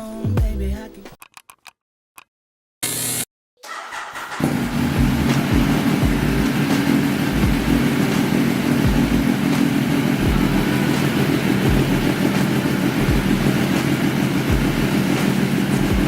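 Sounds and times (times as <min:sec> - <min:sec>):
motorcycle engine idling: 0:04.5 - 0:16.0.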